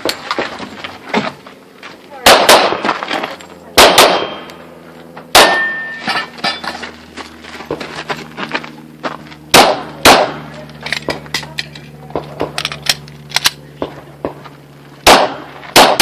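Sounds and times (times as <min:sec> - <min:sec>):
pistol shots echoing: 0:02.2 - 0:03.0, 0:03.8 - 0:04.5, 0:05.3 - 0:06.0, 0:09.5 - 0:10.5, 0:15.0 - 0:16.0.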